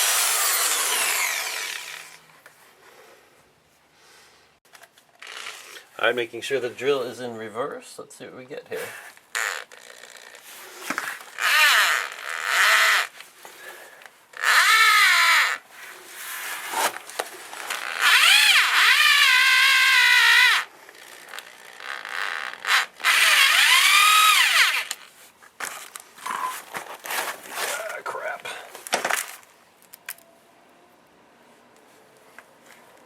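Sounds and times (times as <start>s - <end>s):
electric drill whining: 0.0s - 2.2s, 11.4s - 13.1s, 14.4s - 15.6s, 17.7s - 25.0s.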